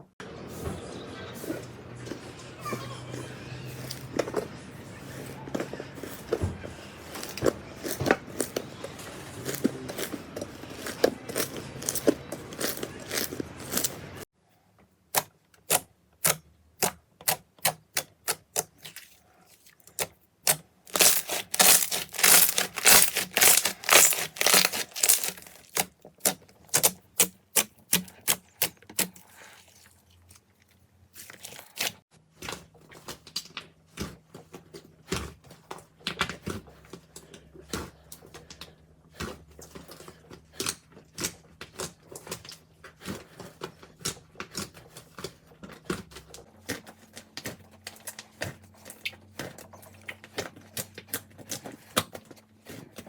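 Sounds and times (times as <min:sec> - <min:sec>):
slime squelching and popping: 0:19.8 - 0:32.0.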